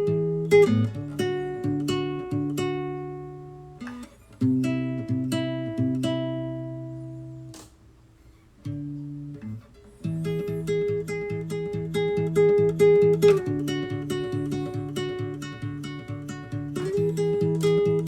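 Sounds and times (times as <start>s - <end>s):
acoustic guitar strumming: 0.0s - 18.0s.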